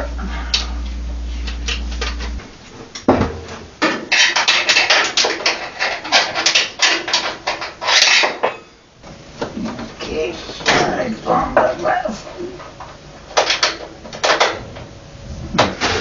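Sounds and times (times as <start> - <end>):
low hum: 0.0 - 3.8, 8.6 - 16.0
hardware rattling as rummaged: 3.8 - 8.6.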